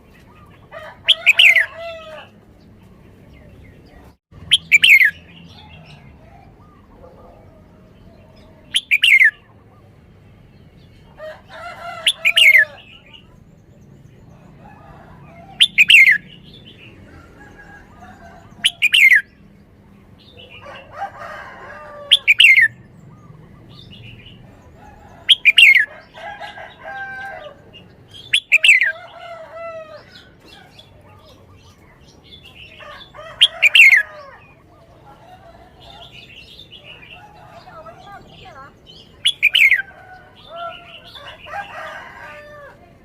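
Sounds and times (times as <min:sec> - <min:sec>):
bulbul singing: 0:03.2 - 0:07.4, 0:08.0 - 0:10.0, 0:15.5 - 0:17.0, 0:21.8 - 0:26.9, 0:27.5 - 0:29.2, 0:30.0 - 0:41.8.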